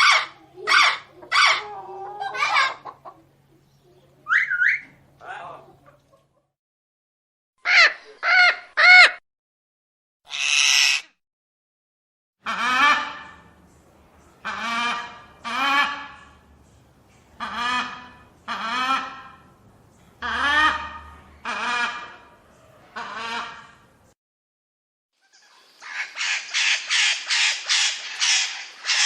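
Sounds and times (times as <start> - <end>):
parrot squawking: 0.0 - 2.9, 4.2 - 4.9, 10.3 - 11.2, 25.8 - 29.0.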